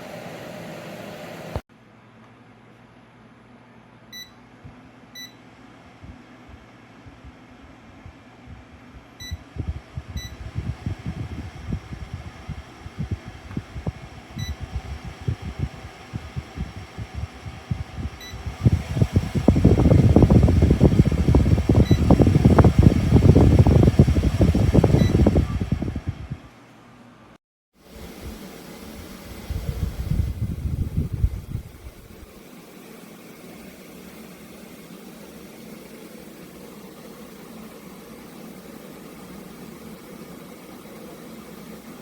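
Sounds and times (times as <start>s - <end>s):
fan air buffeting microphone: 4.5s - 42.0s
short electronic beeps: 10.2s - 10.4s, 14.4s - 14.6s.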